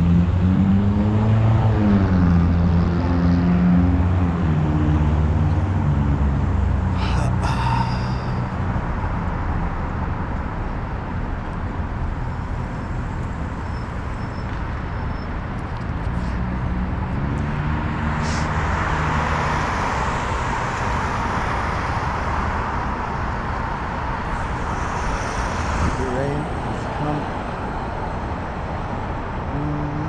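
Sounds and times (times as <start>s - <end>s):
motor vehicle passing: 16.2s - 30.0s
steady low rumble: 22.8s - 30.0s.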